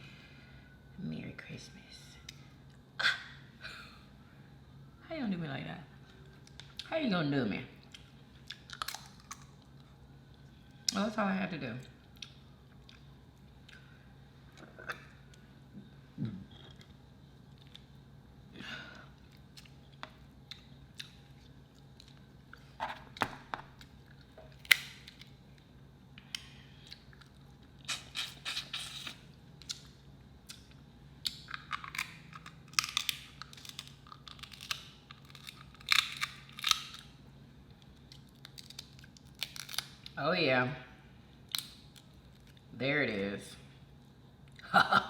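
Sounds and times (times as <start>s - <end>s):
shellfish shells cracking: 8.5s - 9.5s, 24.5s - 25.3s, 30.5s - 37.2s, 37.8s - 40.2s, 41.5s - 42.6s
person chewing: 26.8s - 37.0s.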